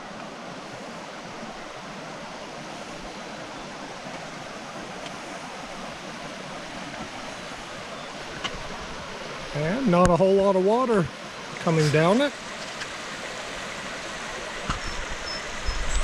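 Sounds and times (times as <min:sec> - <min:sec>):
small creek running: 0:00.0 - 0:16.0.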